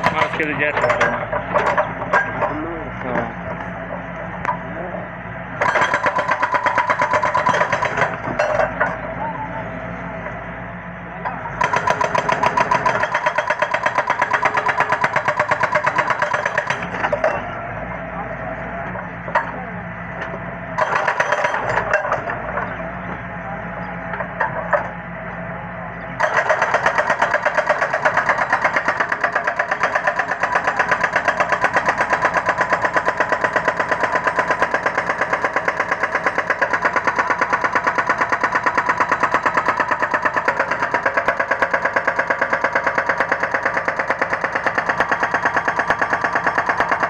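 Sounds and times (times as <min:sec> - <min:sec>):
rapid regular hammering: 0:00.0 - 0:02.5, 0:11.6 - 0:17.2, 0:26.2 - 0:47.0
excavator engine running: 0:00.0 - 0:47.0.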